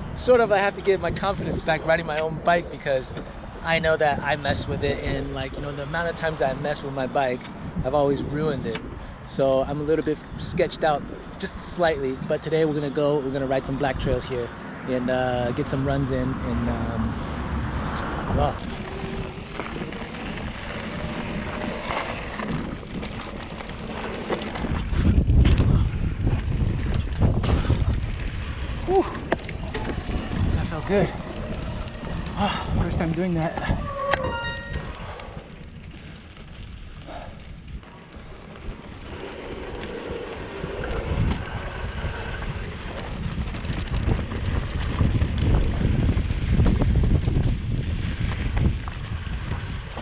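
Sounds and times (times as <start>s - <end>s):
wind buffeting microphone: 0.0s - 6.6s, 17.3s - 34.0s, 38.7s - 50.0s.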